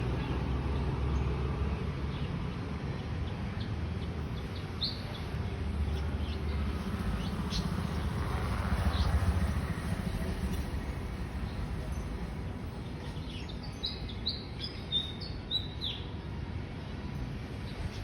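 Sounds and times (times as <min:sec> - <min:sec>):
low rumble of city traffic: 0:00.0 - 0:18.0
vehicle passing: 0:05.5 - 0:13.2
birds chirping: 0:11.3 - 0:18.0.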